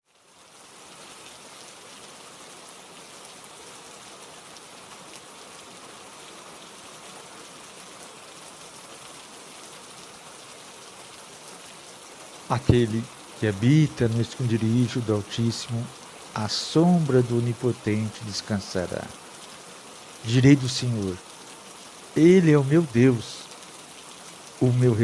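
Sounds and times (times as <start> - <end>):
steady rain hiss: 0.0 - 25.0.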